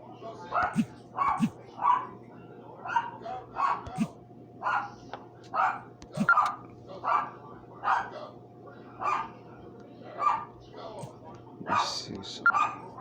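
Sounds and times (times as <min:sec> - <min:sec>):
dog barking: 0:00.5 - 0:02.2, 0:02.8 - 0:08.3, 0:09.0 - 0:09.4, 0:10.2 - 0:11.1, 0:11.7 - 0:13.0.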